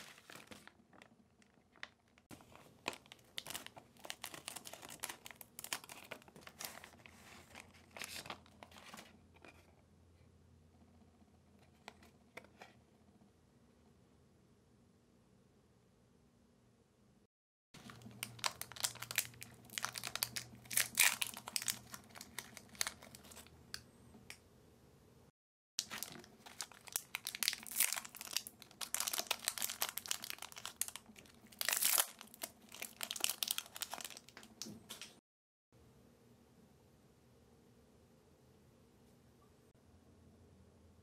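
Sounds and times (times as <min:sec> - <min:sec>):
plastic packaging crinkling: 0:00.0 - 0:09.1, 0:17.8 - 0:23.5, 0:25.8 - 0:35.2.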